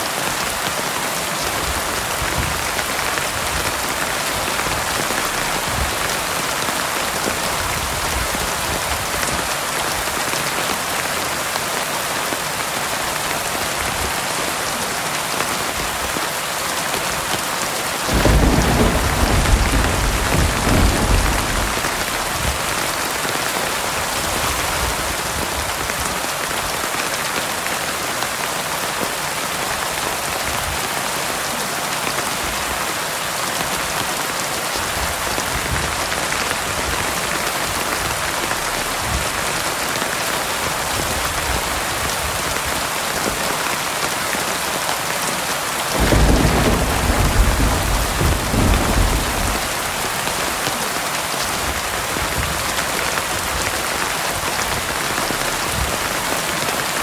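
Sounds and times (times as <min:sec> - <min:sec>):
heavy rain falling: 0:00.0 - 0:57.0
thunder rumbling: 0:01.7 - 0:09.1, 0:18.1 - 0:23.3, 0:46.0 - 0:50.6.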